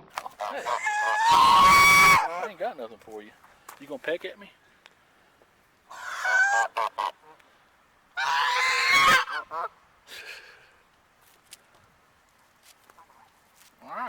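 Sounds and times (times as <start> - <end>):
goose honking harshly: 0.4 - 2.5, 5.9 - 7.4, 8.2 - 9.7.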